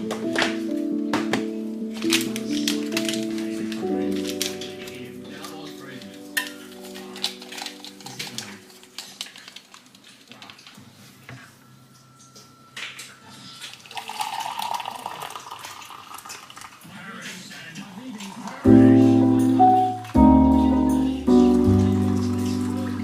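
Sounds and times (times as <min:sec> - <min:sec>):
background music: 0:00.0 - 0:09.3, 0:18.6 - 0:23.0
dishes and cutlery clinking: 0:00.1 - 0:14.8.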